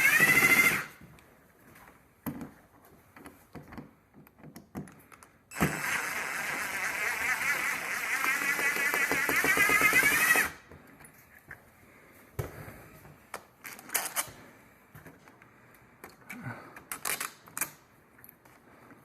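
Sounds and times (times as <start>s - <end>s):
power drill running: 0.0s - 1.0s, 5.5s - 10.6s.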